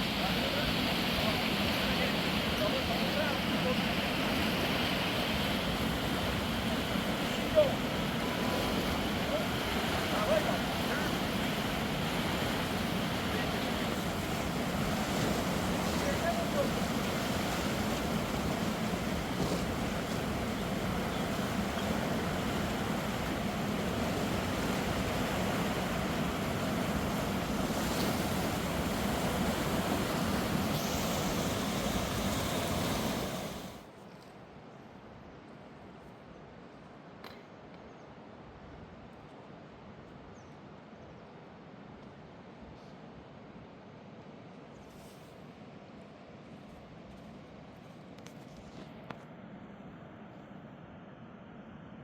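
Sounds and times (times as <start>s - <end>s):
rushing river water: 0.0s - 34.0s
faint hiss: 0.0s - 34.2s.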